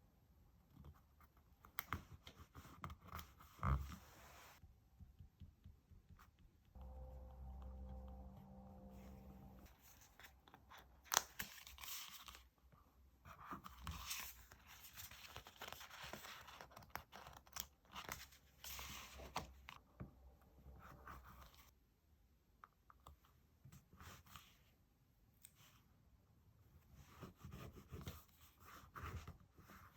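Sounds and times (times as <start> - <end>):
paper crinkling and rustling: 9.7 - 12.5, 13.5 - 19.8.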